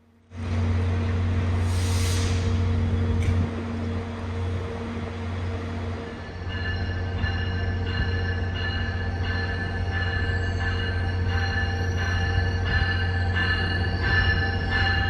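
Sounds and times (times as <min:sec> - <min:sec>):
diesel locomotive engine humming: 0:00.3 - 0:15.0
air hiss: 0:01.6 - 0:02.6.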